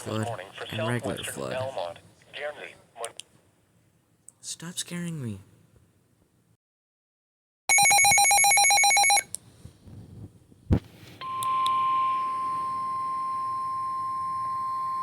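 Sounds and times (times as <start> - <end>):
steady warning alarm tone: 7.7 - 9.2, 11.2 - 15.0.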